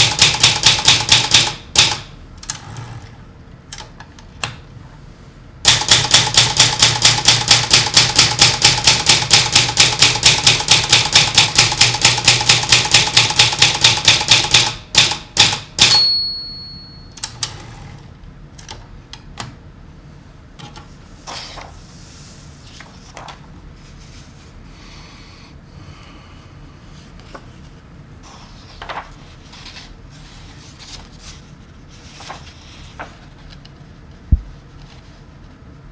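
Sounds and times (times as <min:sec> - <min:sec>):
typewriter keystrokes: 0:00.0 - 0:02.6, 0:05.7 - 0:16.1
typewriter bell ringing: 0:05.7 - 0:17.4.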